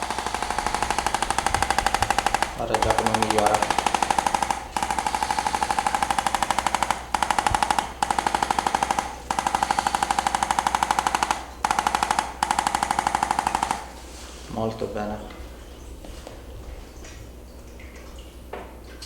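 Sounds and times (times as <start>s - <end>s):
percussion massager tapping: 0.0s - 13.9s.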